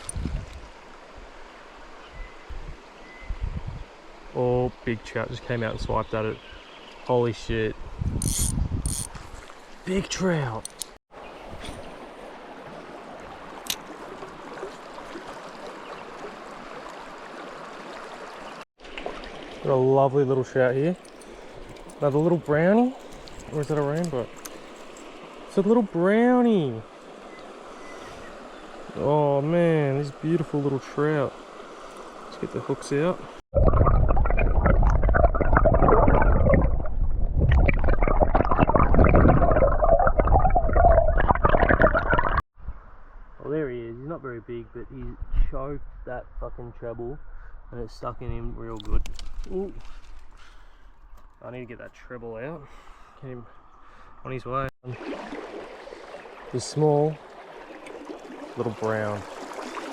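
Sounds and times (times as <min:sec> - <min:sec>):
river water running: 0:00.0 - 0:03.2, 0:08.2 - 0:33.4, 0:54.8 - 0:59.9
constant crackle: 0:20.7 - 0:25.7, 0:48.7 - 0:52.0
river water rushing: 0:54.9 - 0:59.9.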